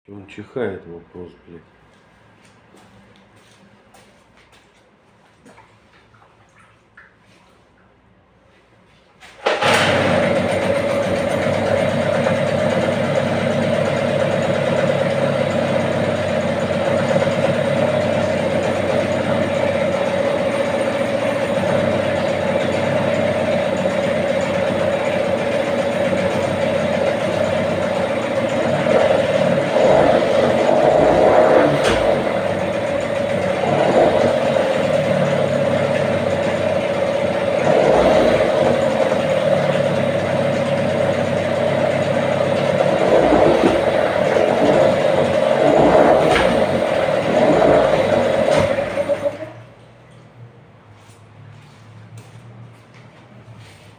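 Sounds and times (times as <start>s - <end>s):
outboard motor running: 9.5s - 49.8s.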